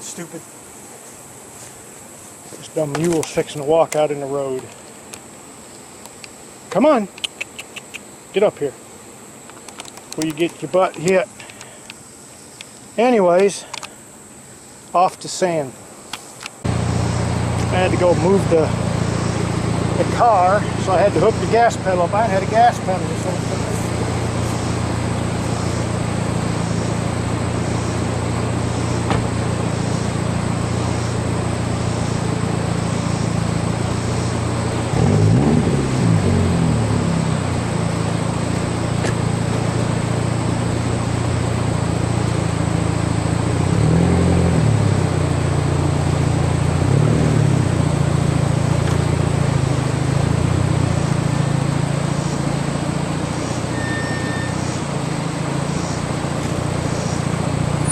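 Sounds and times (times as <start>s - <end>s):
car engine idling and revving: 16.6s - 57.9s.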